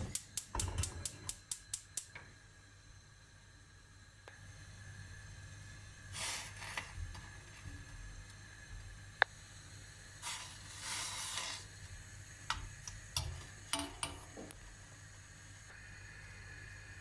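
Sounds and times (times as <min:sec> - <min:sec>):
sharp click: 0:00.1 - 0:02.2
short hiss: 0:06.1 - 0:07.0, 0:10.2 - 0:11.8.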